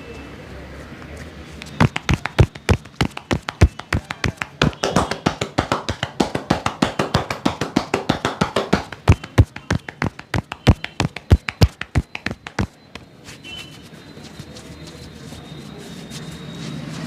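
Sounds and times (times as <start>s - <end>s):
hands slapping head and body: 1.6s - 12.8s.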